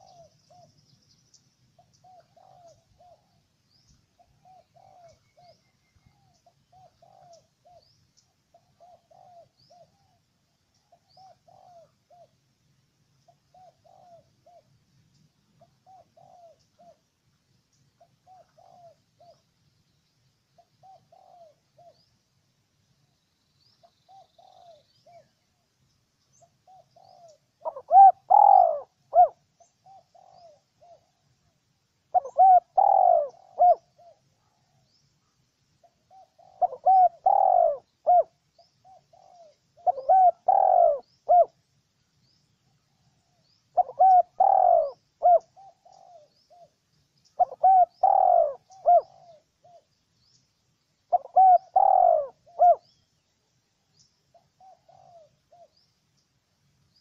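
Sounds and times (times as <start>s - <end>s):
dove cooing: 0.0s - 0.8s, 1.8s - 10.2s, 10.8s - 12.4s, 13.3s - 14.8s, 15.6s - 17.1s, 18.0s - 19.5s, 20.6s - 22.1s, 23.8s - 25.4s, 26.3s - 31.4s, 32.1s - 34.9s, 35.8s - 41.6s, 42.8s - 49.9s, 51.1s - 53.0s, 54.3s - 55.9s
small birds chirping: 0.0s - 12.4s, 13.2s - 57.0s.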